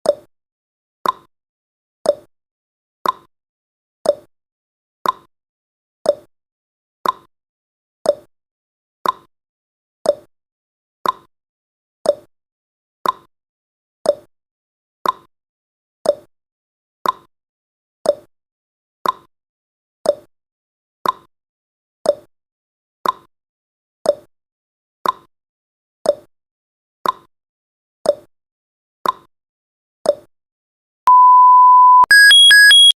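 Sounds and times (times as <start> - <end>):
timer ticking: 31.1 - 32.9.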